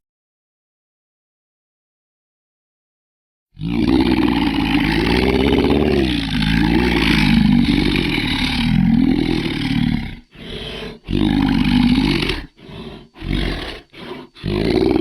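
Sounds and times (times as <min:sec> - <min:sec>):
monster growling roar: 0:03.6 - 0:15.0.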